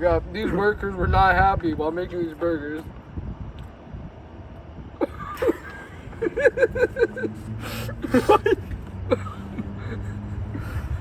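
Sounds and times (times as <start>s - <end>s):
person laughing: 5.0s - 11.0s.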